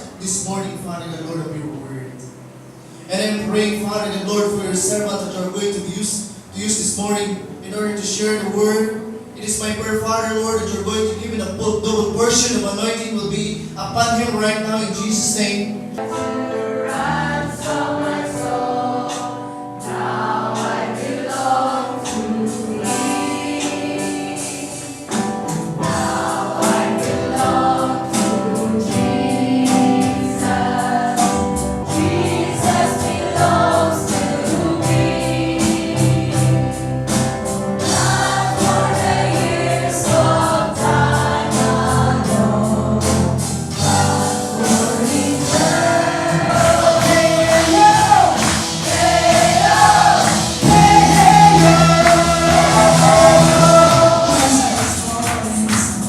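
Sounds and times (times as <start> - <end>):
band playing: 0.0 - 56.0
group singing gospel song: 3.1 - 56.0
bass line: 31.4 - 56.0.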